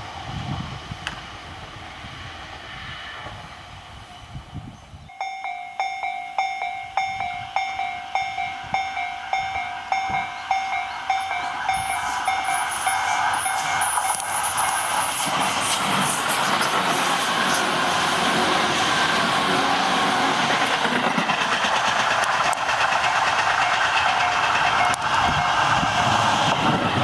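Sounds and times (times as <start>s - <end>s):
approaching train rushing: 0.0s - 27.0s
level crossing alarm bell: 5.1s - 14.3s.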